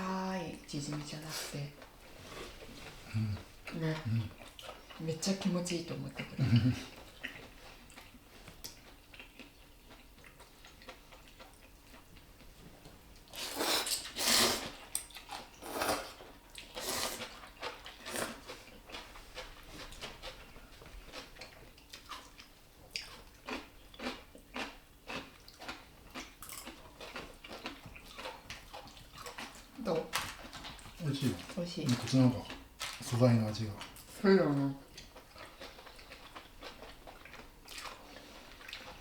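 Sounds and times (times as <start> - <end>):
chewing crunches: 6.9 - 12.2, 13.3 - 33.2, 34.9 - 39.0
crunching bites of crisp food: 21.1 - 29.6.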